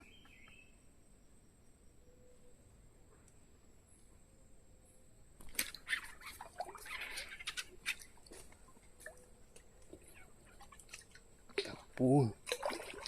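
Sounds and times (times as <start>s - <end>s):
fish splashing in water: 5.4s - 11.7s, 12.4s - 13.0s.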